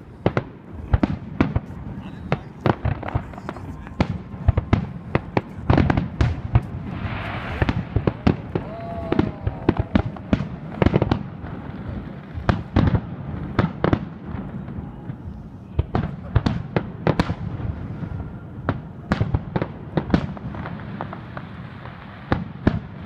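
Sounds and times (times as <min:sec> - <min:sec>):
firework hiss: 0:00.0 - 0:14.8
fireworks bangs: 0:00.0 - 0:23.0.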